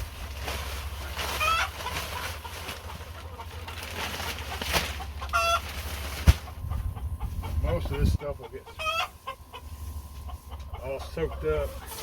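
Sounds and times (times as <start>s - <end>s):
steady low hum: 0.0s - 12.0s
chicken squawking: 1.3s - 3.7s, 4.3s - 5.7s, 6.5s - 12.0s.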